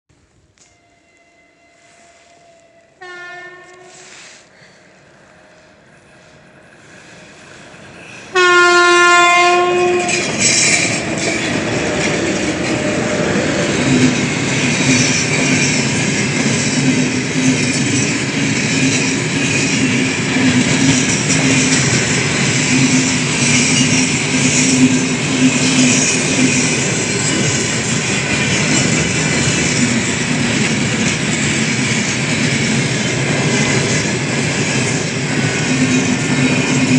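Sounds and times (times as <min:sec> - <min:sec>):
continuous train hum: 0:00.2 - 0:36.9
locomotive horn blasts: 0:00.6 - 0:04.2, 0:08.3 - 0:10.3
freight train rumbling past: 0:00.8 - 0:36.9
wheels clickety-clack: 0:09.4 - 0:36.9.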